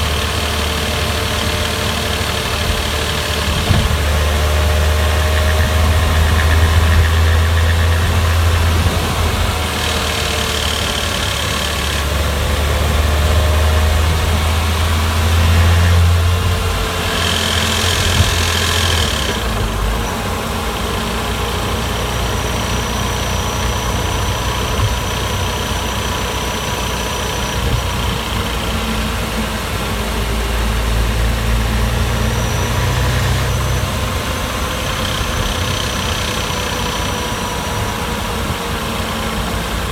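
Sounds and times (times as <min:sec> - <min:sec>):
car engine humming: 0:00.0 - 0:39.9.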